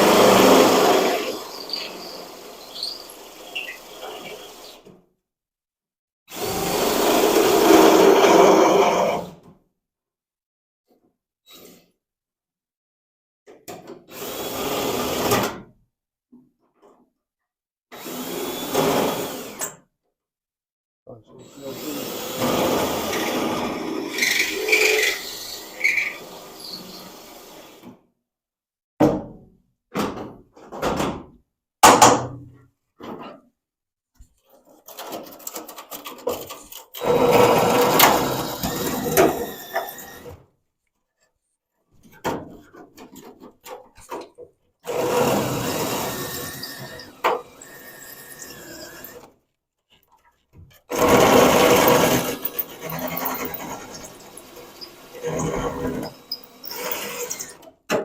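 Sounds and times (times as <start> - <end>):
electric drill cutting sheet metal: 0.0 - 4.8, 37.0 - 40.4, 44.9 - 49.3, 50.9 - 57.6.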